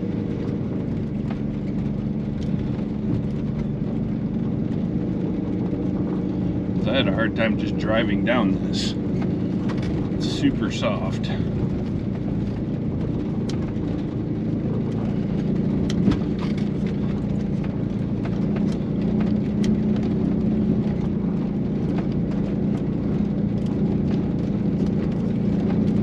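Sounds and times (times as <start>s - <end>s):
van engine under load: 0.0s - 26.0s.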